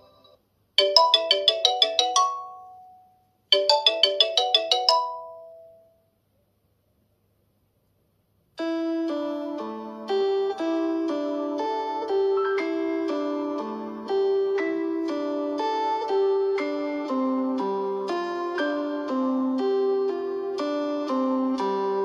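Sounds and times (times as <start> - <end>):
ringtone with long held notes: 0.0 - 6.0, 8.6 - 22.0
short quick ringtone melody: 0.8 - 5.9.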